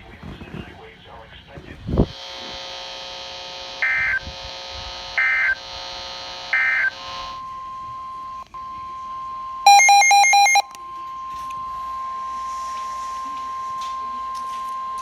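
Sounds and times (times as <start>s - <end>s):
warbling electronic alarm: 2.3s - 15.0s
steady alert tone: 9.7s - 10.7s.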